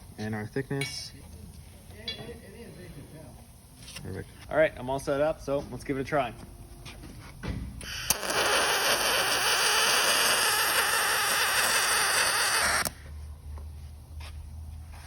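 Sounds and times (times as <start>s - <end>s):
welding arc hissing: 7.8s - 13.0s.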